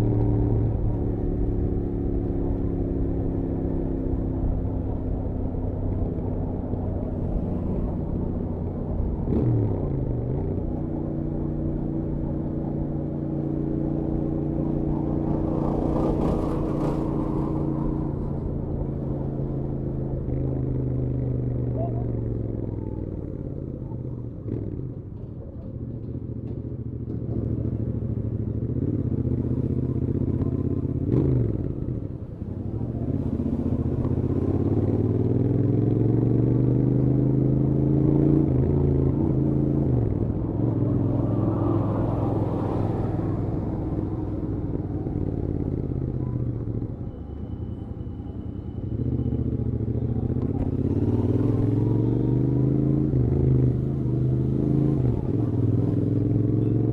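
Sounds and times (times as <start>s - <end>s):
wind and road rush: 0.0s - 56.9s
motorcycle engine revving: 27.2s - 46.9s, 48.8s - 56.9s.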